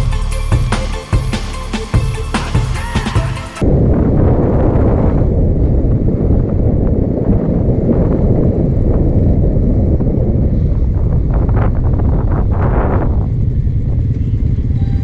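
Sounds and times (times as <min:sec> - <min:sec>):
background music: 0:00.0 - 0:03.6
wind buffeting microphone: 0:03.6 - 0:15.0.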